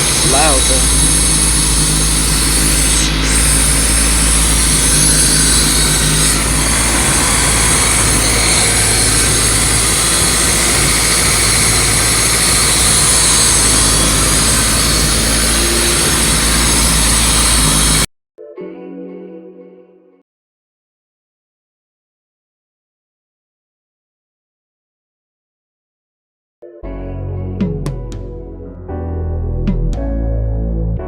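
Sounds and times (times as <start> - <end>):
loud car engine running: 0.0 - 18.1.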